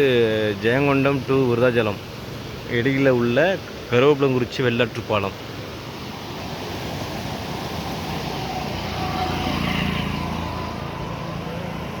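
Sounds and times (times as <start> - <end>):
river rushing: 0.0 - 12.0
vehicle engine passing: 7.0 - 12.0.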